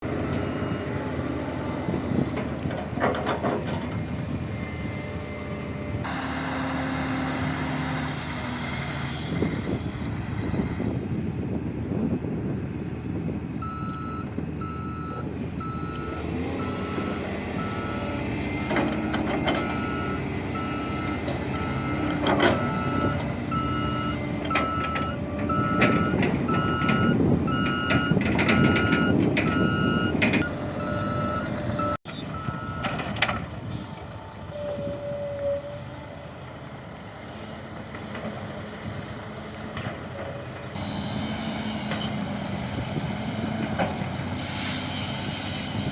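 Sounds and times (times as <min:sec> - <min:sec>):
truck reversing alarm beeping: 0:00.0 - 0:08.2, 0:13.6 - 0:36.1.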